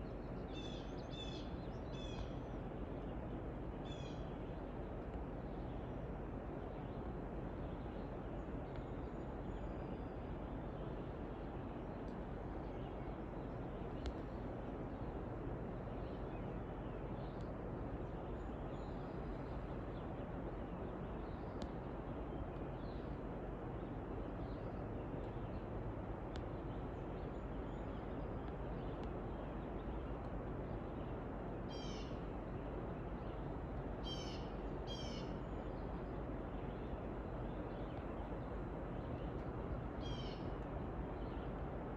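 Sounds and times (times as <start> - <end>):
faint bird chirps: 31.7 - 32.2, 34.0 - 35.7, 40.0 - 40.5.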